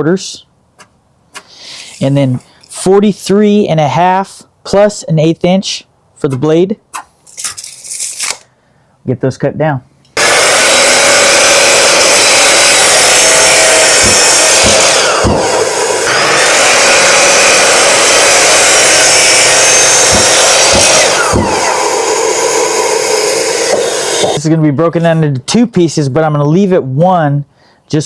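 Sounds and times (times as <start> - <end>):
miter saw cutting boards: 10.2 - 24.4
low thuds: 14.0 - 15.6, 20.0 - 21.6.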